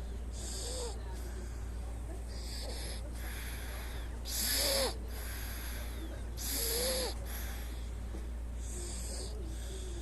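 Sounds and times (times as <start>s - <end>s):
steady low hum: 0.0s - 10.0s
baby snoring: 4.3s - 7.2s.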